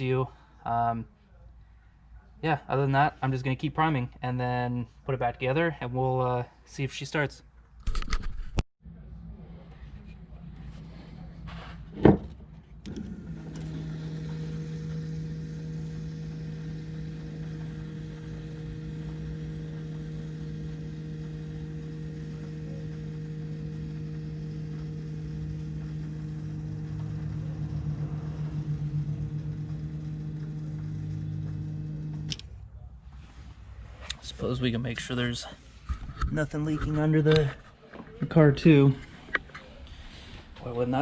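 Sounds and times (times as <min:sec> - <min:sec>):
electric fuel pump humming: 0:10.2 - 0:33.0.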